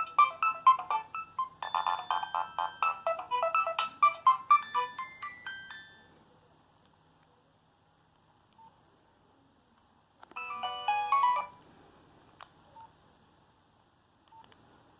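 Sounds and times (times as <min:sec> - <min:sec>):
phone ringtone beeping melody: 0:00.0 - 0:06.1, 0:10.4 - 0:11.6.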